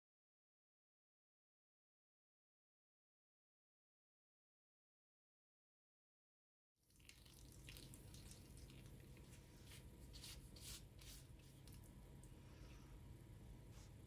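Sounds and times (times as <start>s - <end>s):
soft rustles or splashes: 6.9s - 12.4s.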